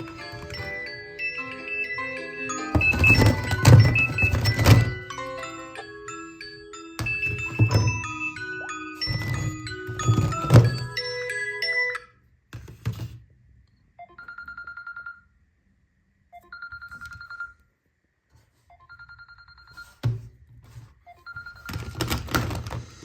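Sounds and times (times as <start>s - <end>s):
trilling phone ringtone: 0.0s - 12.2s, 14.0s - 15.2s, 16.4s - 17.6s, 21.1s - 22.3s.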